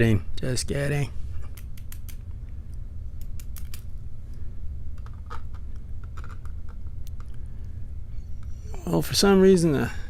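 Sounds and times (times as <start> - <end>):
steady low hum: 0.0 - 10.0
metallic clicks of padlock parts: 3.2 - 3.9.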